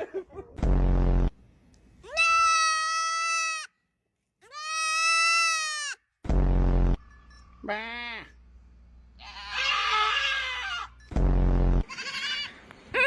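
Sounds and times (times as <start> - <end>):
goat bleating: 2.0 - 3.8, 4.4 - 6.1, 7.6 - 8.4, 9.2 - 11.0, 11.8 - 13.0.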